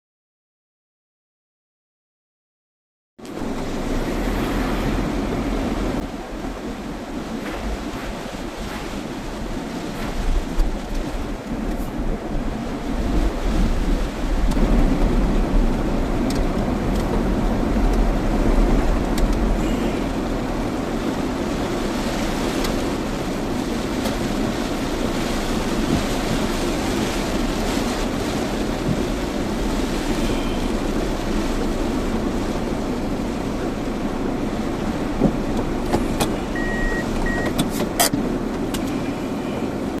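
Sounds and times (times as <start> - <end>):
strong wind roaring: 3.2 - 37.4
short high beeps: 36.5 - 37.6.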